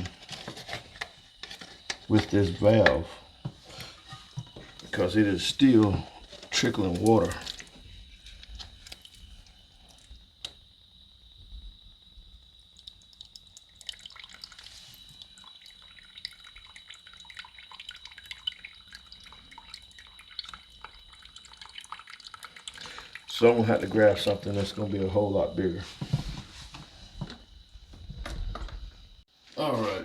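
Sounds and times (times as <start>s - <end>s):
water dripping: 1.4s - 10.6s, 12.4s - 25.4s.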